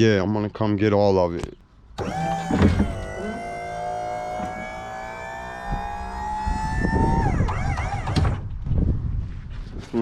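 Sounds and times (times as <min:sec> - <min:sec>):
emergency siren wailing: 0:02.0 - 0:08.3.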